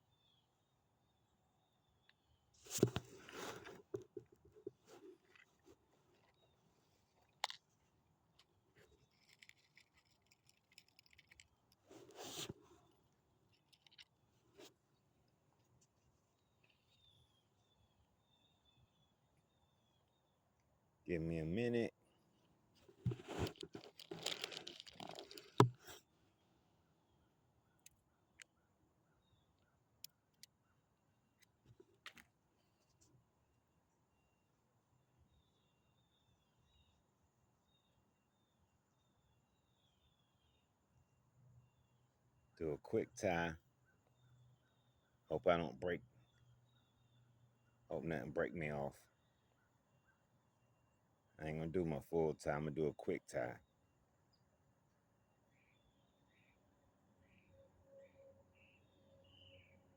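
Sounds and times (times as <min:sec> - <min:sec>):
fishing line handling noises: 0:02.1 - 0:17.0, 0:22.7 - 0:26.1.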